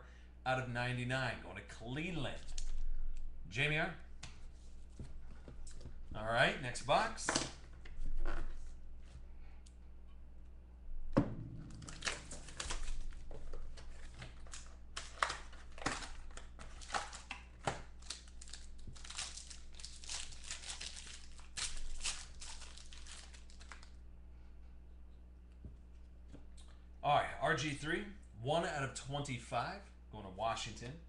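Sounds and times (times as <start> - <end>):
thump: 11.1 - 11.8
plastic wrap crinkling and tearing: 11.7 - 24.0.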